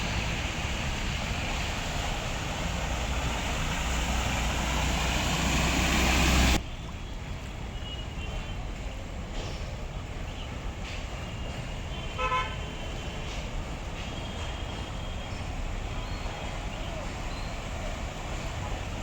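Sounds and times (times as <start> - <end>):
distant horns tooting: 0.0 - 6.9, 11.2 - 19.0
street traffic rumble: 0.0 - 19.0
vehicle horn: 11.9 - 12.9.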